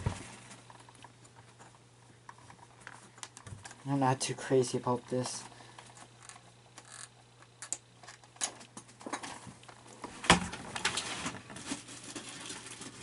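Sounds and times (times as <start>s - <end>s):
plastic parts clicking and scraping: 5.2s - 9.8s.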